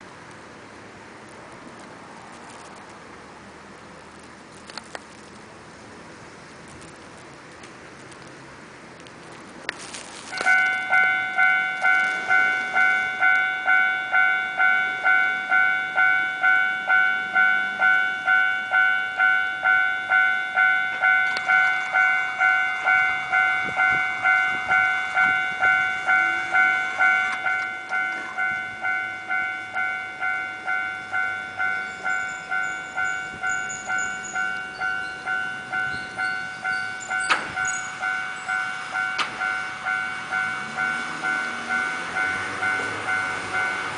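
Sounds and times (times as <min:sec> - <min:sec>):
electronic crossing bell clanging: 0:10.2 - 0:43.9.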